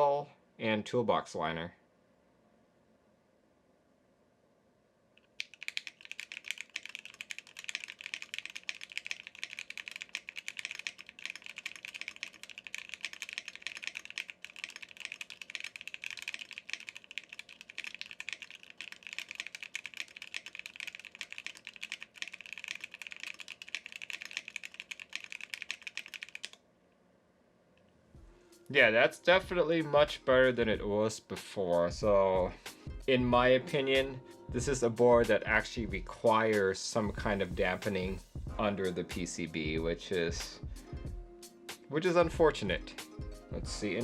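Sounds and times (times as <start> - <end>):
fast typing on mechanical keyboard: 5.3 - 26.6.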